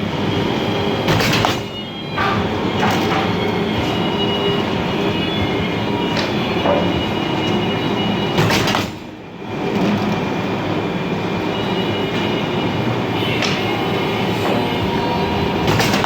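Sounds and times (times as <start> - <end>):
machine rattling and clattering: 1.0 - 10.6, 13.4 - 16.0.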